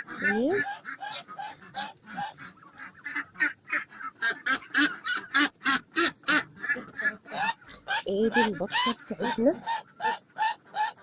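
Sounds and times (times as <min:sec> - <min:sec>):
ducks quacking: 0:00.0 - 0:11.0.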